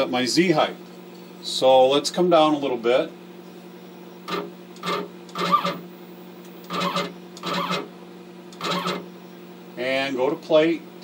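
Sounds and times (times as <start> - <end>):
steady low hum: 0.0 - 11.0
stepper motor buzzing: 3.9 - 9.7.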